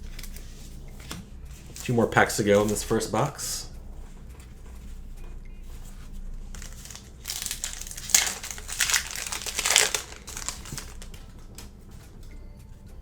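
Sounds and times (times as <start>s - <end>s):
plastic wrapper crinkling: 1.6s - 3.6s, 5.9s - 11.4s.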